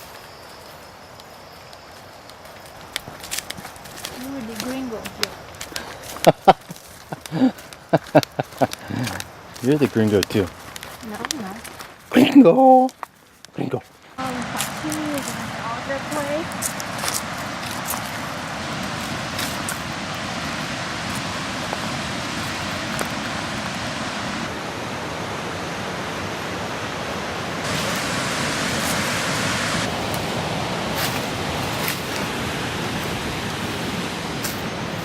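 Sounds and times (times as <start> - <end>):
waterfall and river rushing: 14.2 - 35.0.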